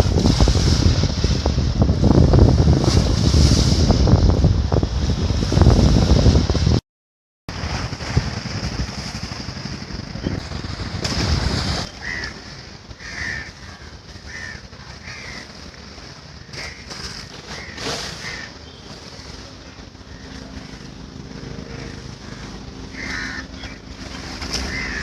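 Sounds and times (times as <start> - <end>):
wind on microphone: 0.0 - 6.8, 7.5 - 25.0
floodwater rushing: 10.4 - 25.0
bird calling: 11.8 - 15.6, 16.4 - 21.0, 21.6 - 25.0.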